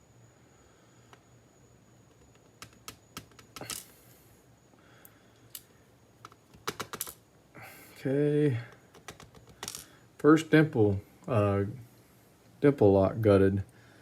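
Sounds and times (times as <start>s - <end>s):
small metal lock parts clicking: 2.4s - 3.9s.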